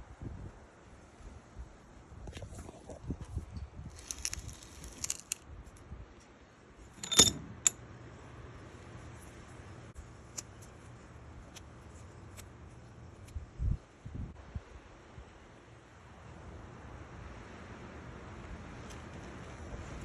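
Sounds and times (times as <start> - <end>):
small metal parts clinking: 3.9 - 5.4, 6.9 - 7.8.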